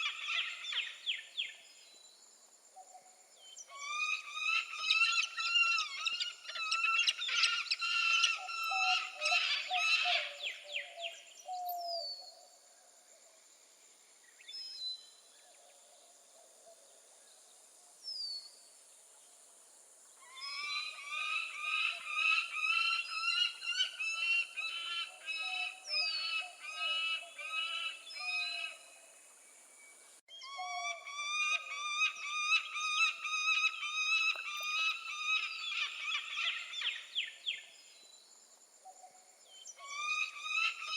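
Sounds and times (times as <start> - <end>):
falcon calling: 39.8 - 40.9.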